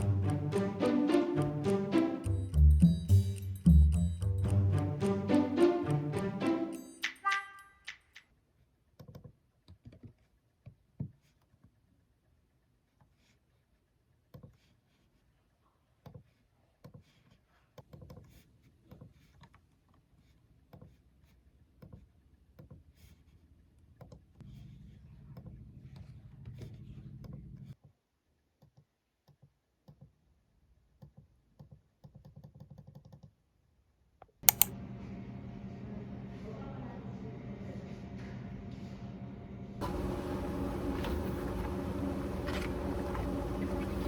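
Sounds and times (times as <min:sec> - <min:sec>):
sharp loud click: 0:34.5 - 0:34.7
low steady hum: 0:34.5 - 0:44.0.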